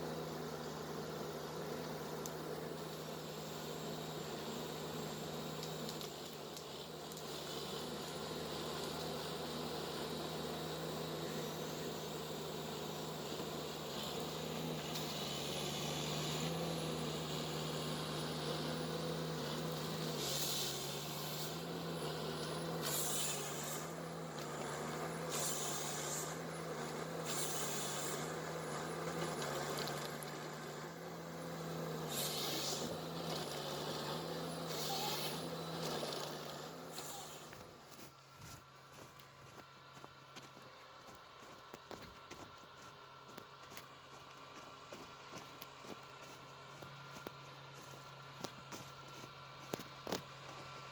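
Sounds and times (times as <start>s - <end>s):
diesel engine running: 0.0s - 50.9s
short hissing bursts: 22.8s - 24.0s, 25.3s - 26.4s, 27.2s - 28.3s, 32.0s - 32.9s, 34.6s - 35.7s.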